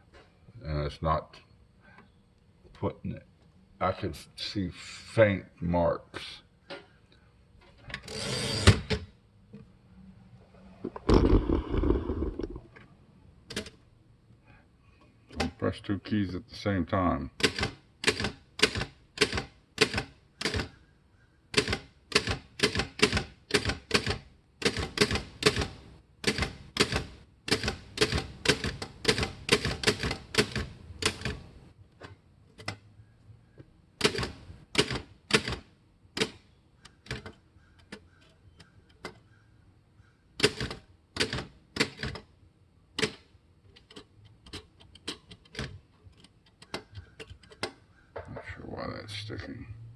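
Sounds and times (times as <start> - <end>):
manual typewriter typing: 17.4 - 20.8, 21.5 - 31.4, 34.0 - 37.4, 40.4 - 42.3, 43.0 - 47.7.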